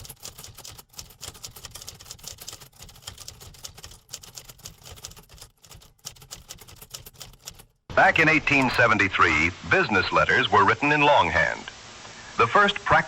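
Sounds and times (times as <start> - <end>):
typewriter keys clattering: 0.0 - 7.9.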